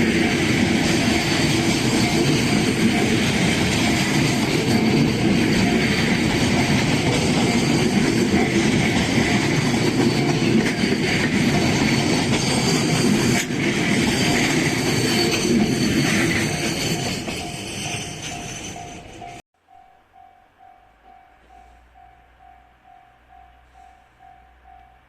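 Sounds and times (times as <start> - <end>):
train wheels rumbling on rail: 0.0 - 19.4
crossing warning bell dinging: 0.0 - 25.0.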